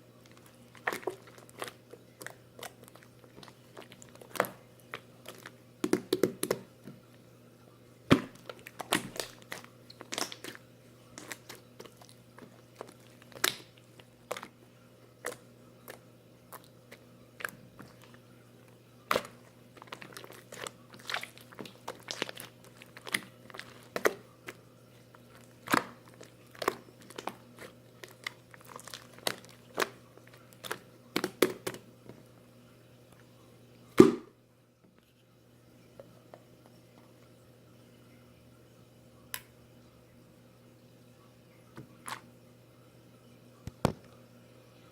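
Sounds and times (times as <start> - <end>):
small clicks and crinkles: 0.2 - 5.6, 8.4 - 16.0, 16.6 - 32.3.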